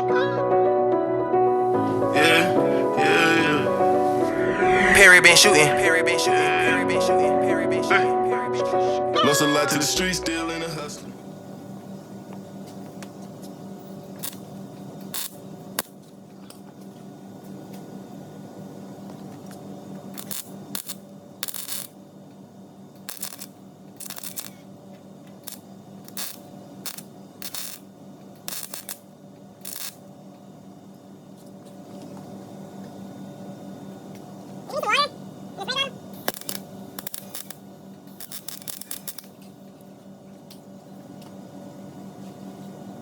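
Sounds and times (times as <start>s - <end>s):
steady electrical hum: 1.3s - 43.0s
welding crackling bursts: 14.2s - 14.5s, 15.1s - 16.0s, 20.1s - 22.0s, 23.0s - 24.6s, 25.4s - 30.0s, 36.2s - 39.4s.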